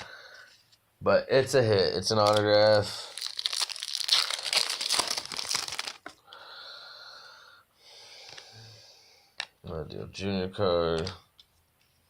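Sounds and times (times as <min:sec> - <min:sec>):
wrapper tearing and crinkling: 0:02.1 - 0:06.2.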